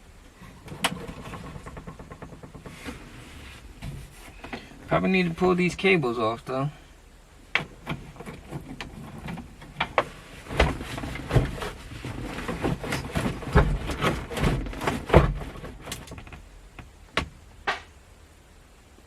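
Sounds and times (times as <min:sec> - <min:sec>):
clunks and rattles of heater box: 0:00.4 - 0:05.0, 0:07.5 - 0:17.9.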